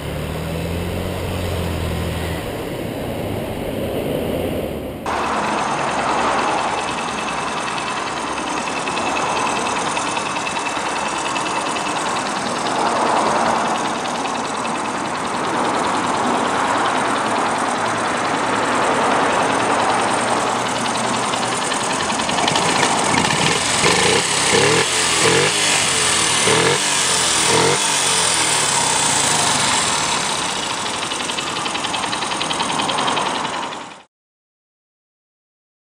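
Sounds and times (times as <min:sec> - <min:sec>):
small engine idling and revving: 0:00.0 - 0:34.1.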